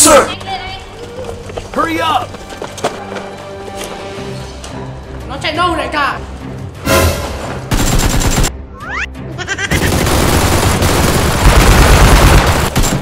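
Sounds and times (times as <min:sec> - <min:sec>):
background music: 0:00.0 - 0:13.0
rapid automatic gunfire: 0:07.7 - 0:08.5, 0:09.7 - 0:13.0.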